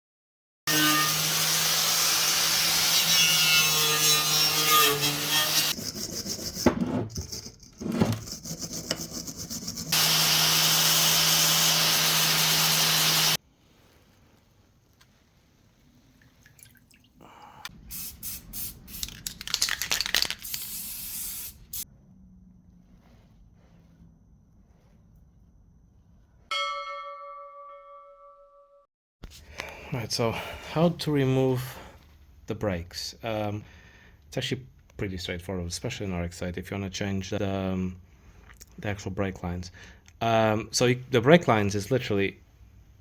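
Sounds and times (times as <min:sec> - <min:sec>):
motor-driven tool humming: 0:09.9 - 0:13.4
short hissing bursts: 0:17.7 - 0:19.2, 0:20.4 - 0:21.9.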